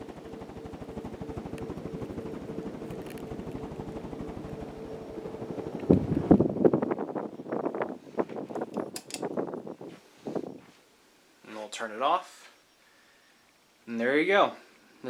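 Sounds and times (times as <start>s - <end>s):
motor hum: 0.0s - 7.1s
ceiling fan whooshing: 0.0s - 10.8s.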